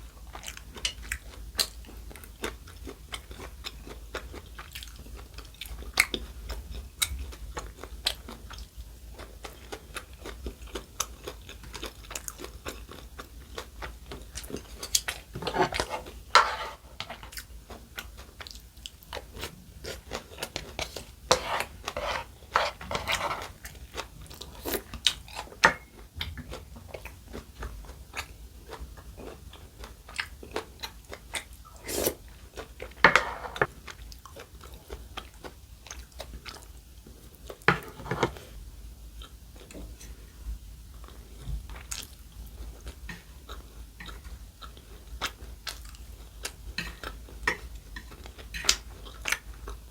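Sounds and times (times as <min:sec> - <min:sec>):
person chewing crunchy food: 0:00.3 - 0:36.7.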